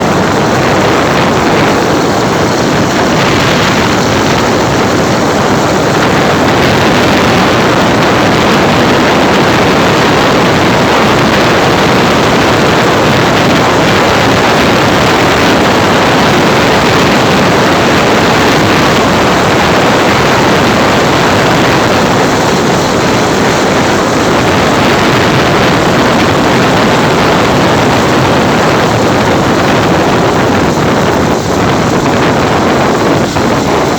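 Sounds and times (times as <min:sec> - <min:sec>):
strong wind rushing: 0:00.0 - 0:33.9.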